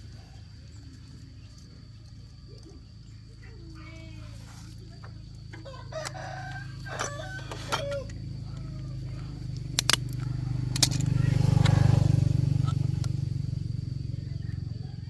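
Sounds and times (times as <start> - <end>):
steady low hum: 0.0 - 15.0
chickens clucking: 4.8 - 12.8
rooster crowing: 5.4 - 9.4
sharp clicks: 9.4 - 13.2.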